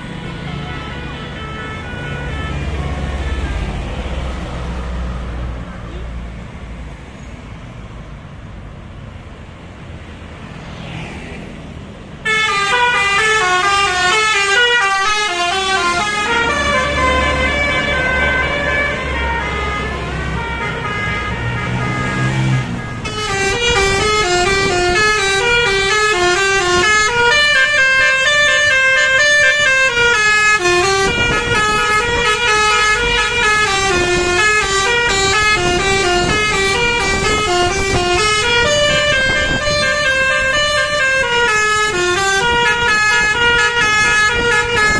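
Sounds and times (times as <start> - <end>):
multi-tone bus horn tune: 0.0 - 4.4, 12.2 - 44.9
traffic noise: 0.0 - 44.9
bus engine revving: 11.8 - 44.9.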